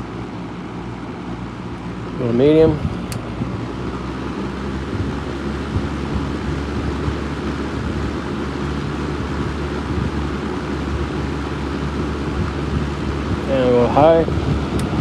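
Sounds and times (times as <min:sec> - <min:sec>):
box fan blowing air: 0:00.0 - 0:15.0.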